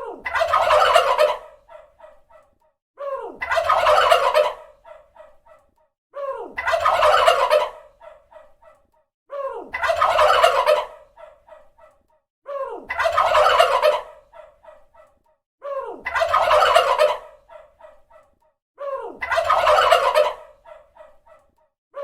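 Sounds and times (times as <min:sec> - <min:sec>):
turkey gobbling: 0:00.2 - 0:02.1, 0:03.5 - 0:05.1, 0:06.6 - 0:08.2, 0:09.8 - 0:11.3, 0:13.0 - 0:14.5, 0:16.1 - 0:17.7, 0:19.2 - 0:21.1.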